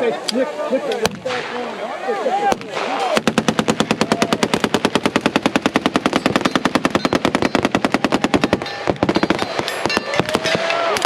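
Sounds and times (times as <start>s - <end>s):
machine gun full-auto fire: 2.8s - 10.7s.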